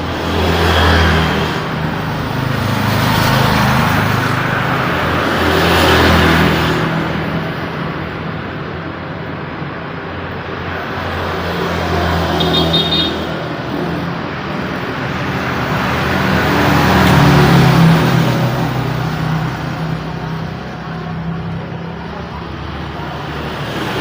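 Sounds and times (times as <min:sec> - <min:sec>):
road traffic din: 0:00.0 - 0:24.0.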